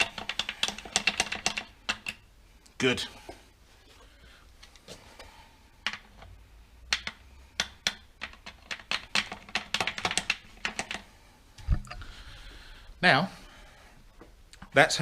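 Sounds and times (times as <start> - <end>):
hand tools clicking on metal: 0.0 - 2.2.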